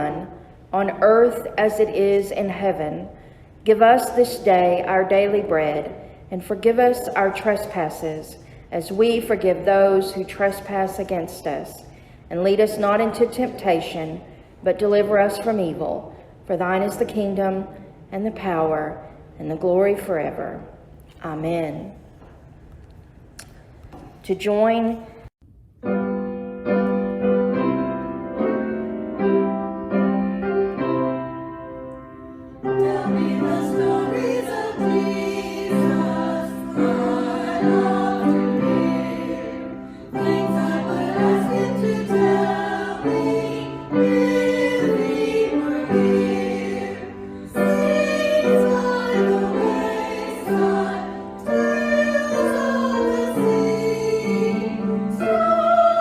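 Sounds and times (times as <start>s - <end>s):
piano chords: 25.6s - 56.0s
choir singing a hymn: 32.6s - 56.0s.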